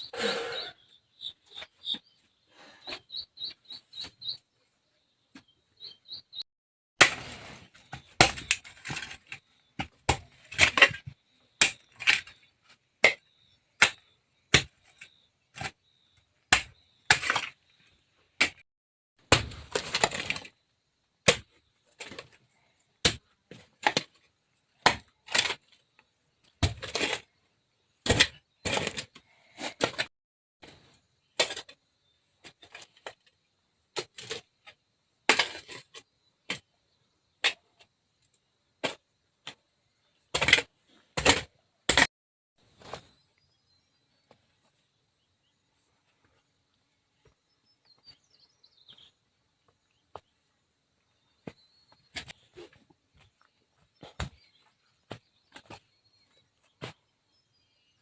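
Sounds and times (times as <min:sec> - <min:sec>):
bird chirping: 0:00.0 - 0:06.4, 0:11.0 - 0:17.9, 0:42.8 - 0:52.2, 0:53.4 - 0:58.0.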